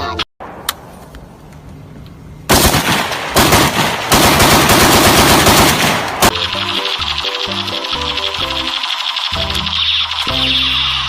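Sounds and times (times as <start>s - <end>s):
music: 0.0s - 0.2s, 6.3s - 11.0s
automatic gunfire bursts: 2.5s - 7.2s.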